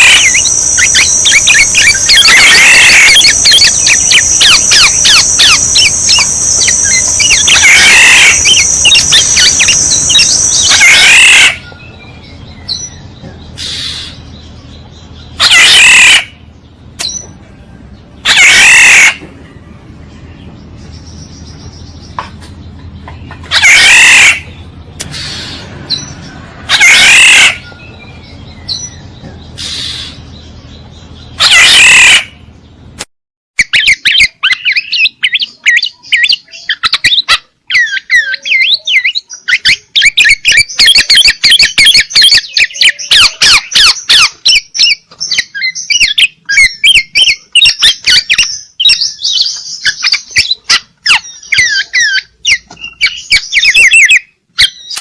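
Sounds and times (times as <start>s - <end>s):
oriole calls: 0.0s - 11.7s, 15.4s - 16.3s, 18.2s - 19.3s, 26.6s - 27.8s, 31.4s - 32.3s.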